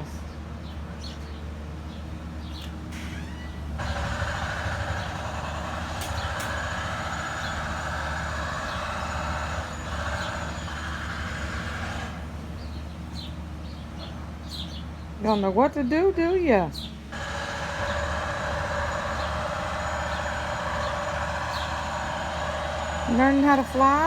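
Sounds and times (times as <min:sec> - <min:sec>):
vehicle engine running: 0:03.8 - 0:14.8, 0:17.1 - 0:24.0.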